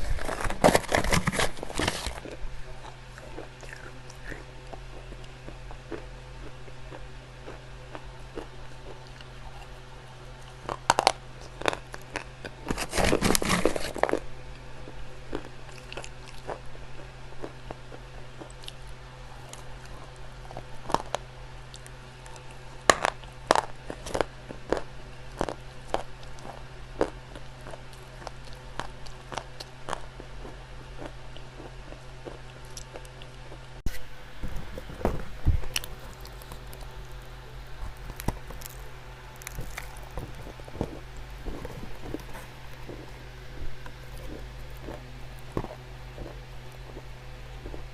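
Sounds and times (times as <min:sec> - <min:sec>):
clay crunching and cracking: 0:00.0 - 0:06.1, 0:10.5 - 0:14.3, 0:18.4 - 0:30.0, 0:33.9 - 0:47.9
steady low hum: 0:00.0 - 0:47.9.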